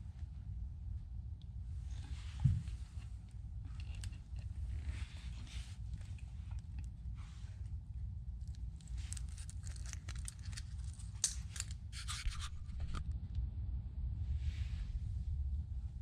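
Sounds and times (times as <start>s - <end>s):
steady low rumble: 0.0s - 16.0s
handling scratches and clicks: 3.0s - 7.0s, 8.4s - 13.2s.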